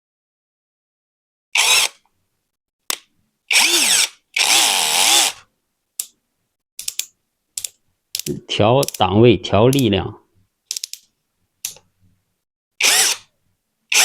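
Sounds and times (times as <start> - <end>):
cordless drill motor spinning: 1.6 - 2.0, 3.5 - 5.4, 12.8 - 13.3
short clicks: 6.8 - 9.0.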